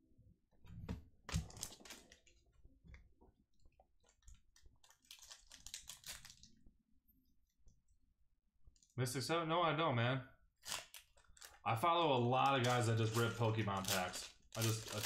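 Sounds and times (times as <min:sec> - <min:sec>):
plastic packaging rustling: 0:01.3 - 0:02.4, 0:04.0 - 0:06.5, 0:10.6 - 0:15.0.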